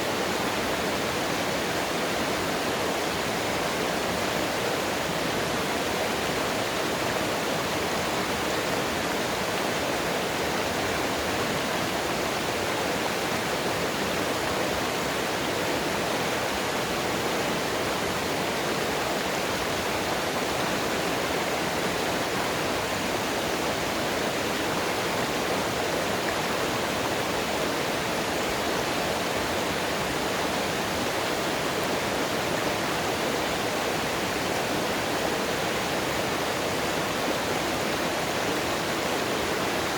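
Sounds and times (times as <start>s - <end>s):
flowing mountain water: 0.0s - 39.9s.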